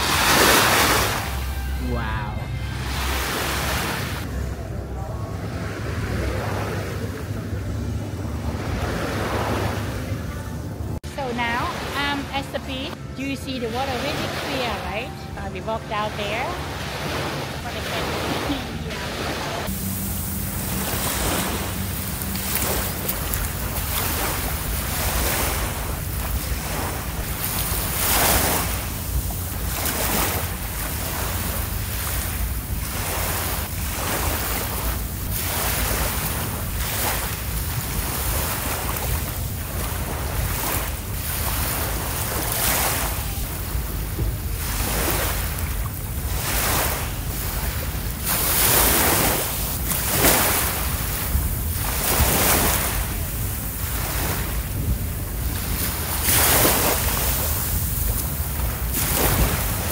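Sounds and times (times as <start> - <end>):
small waves washing on beach: 0.0 - 13.0, 13.6 - 59.9
wind rumbling on microphone: 16.2 - 59.9.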